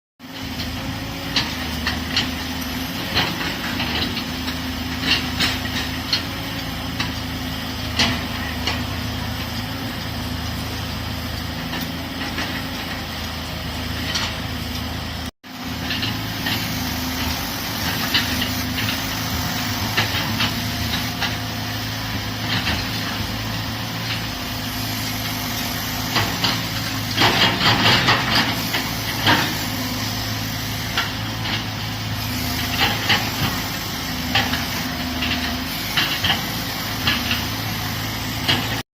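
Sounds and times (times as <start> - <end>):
excavator diesel engine running: 0.2 - 38.8.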